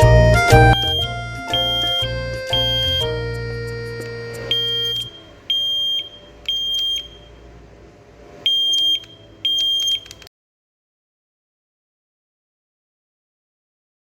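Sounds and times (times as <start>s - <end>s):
smoke alarm beeping: 0.0s - 3.2s, 4.5s - 7.4s, 8.4s - 10.3s.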